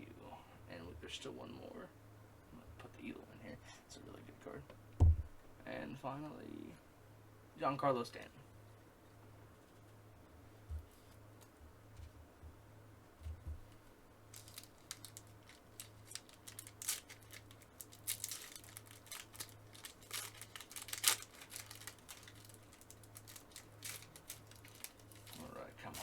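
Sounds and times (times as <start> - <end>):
steady low hum: 0.0 - 26.0
foil wrapper tearing and crinkling: 14.3 - 26.0.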